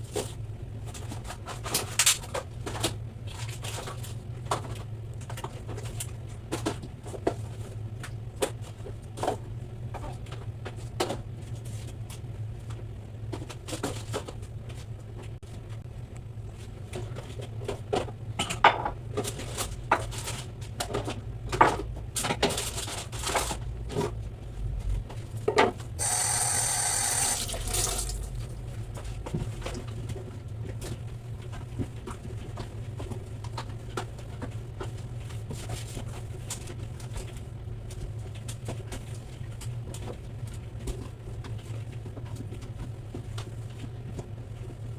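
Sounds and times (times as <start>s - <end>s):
steady low hum: 25.9s - 32.9s
tap running: 26.0s - 29.8s.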